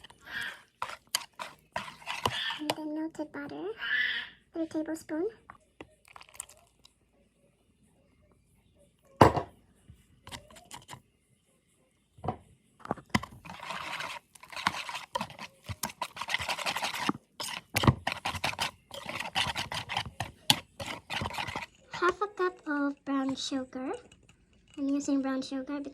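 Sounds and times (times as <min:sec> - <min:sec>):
utensil scraping a bowl: 0:00.0 - 0:02.8, 0:10.2 - 0:11.0, 0:13.1 - 0:22.7.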